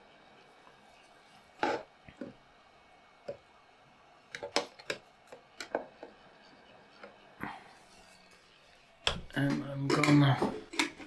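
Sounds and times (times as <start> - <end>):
small tools clicking and tapping: 9.0 - 11.0.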